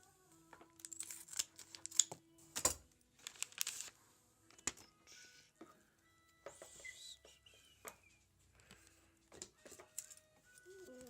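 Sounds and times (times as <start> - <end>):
wrapper crinkling and tearing: 0.8 - 2.2, 3.1 - 4.0.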